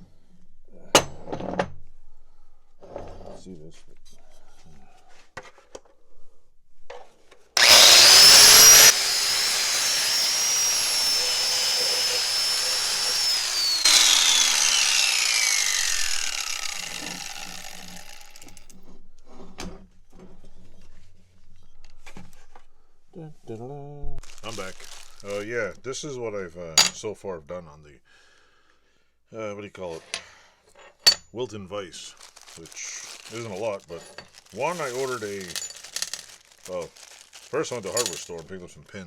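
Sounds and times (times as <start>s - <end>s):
wire wheel scouring metal: 7.6s - 18.5s, 32.4s - 38.4s
power tool whining: 7.6s - 18.7s, 24.2s - 25.4s, 32.2s - 38.4s.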